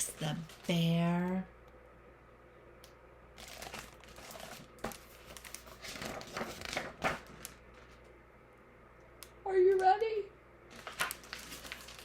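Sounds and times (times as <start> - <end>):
paper rustling and crinkling: 3.4 - 8.1, 10.7 - 12.0.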